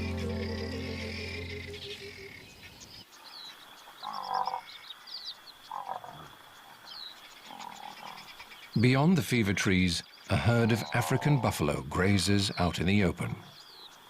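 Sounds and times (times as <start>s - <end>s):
documentary music: 0.0s - 2.4s
high chirps: 0.0s - 2.8s
frogs croaking: 0.0s - 14.0s.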